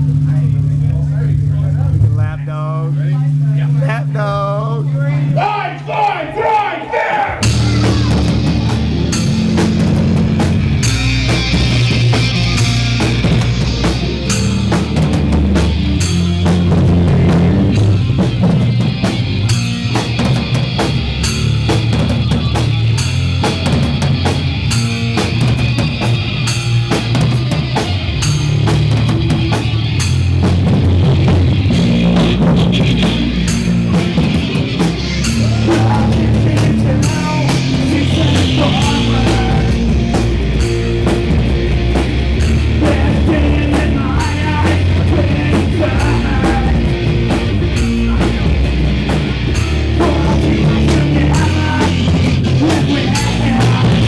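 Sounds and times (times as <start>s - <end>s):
rock band playing: 0.0s - 54.0s.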